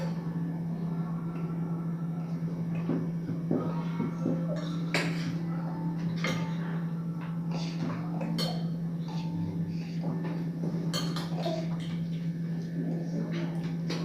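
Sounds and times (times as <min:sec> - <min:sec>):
steady low hum: 0:00.0 - 0:14.0
cutlery clinking on plates: 0:07.9 - 0:08.8, 0:10.8 - 0:12.0.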